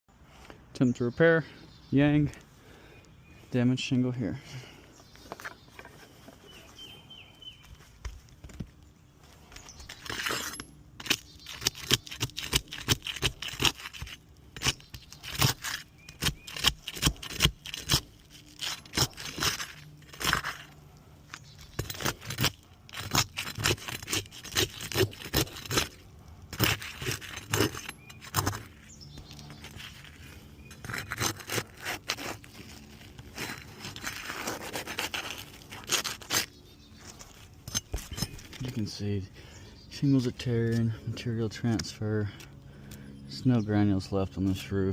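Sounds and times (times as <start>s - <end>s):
roof shingles being pried up: 9.4s - 38.8s.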